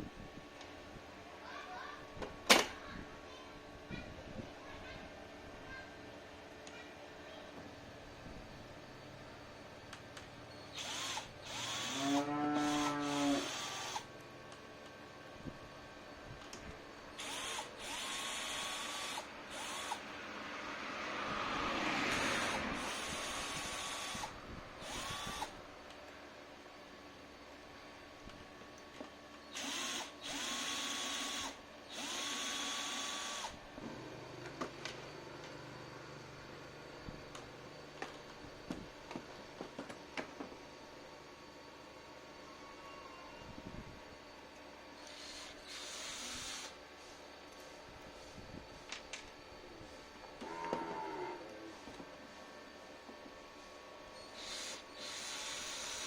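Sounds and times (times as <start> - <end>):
electric drill motor: 10.7 - 14.1, 17.1 - 20.1, 21.8 - 25.6, 29.5 - 33.8, 45.0 - 46.8, 54.2 - 56.0.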